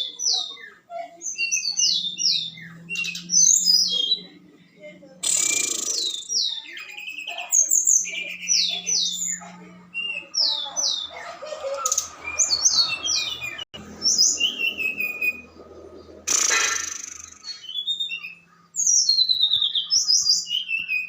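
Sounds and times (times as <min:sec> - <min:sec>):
birds chirping: 0:00.0 - 0:21.0
harsh rasping bird call: 0:05.2 - 0:09.4, 0:10.0 - 0:21.0.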